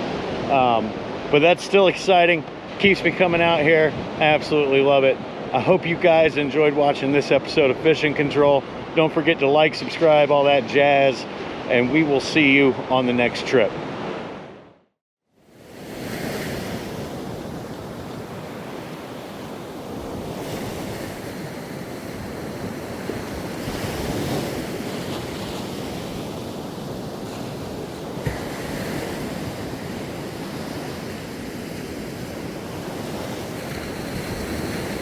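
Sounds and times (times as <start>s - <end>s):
surf breaking on beach: 15.5s - 35.0s
wind on microphone: 15.6s - 35.0s.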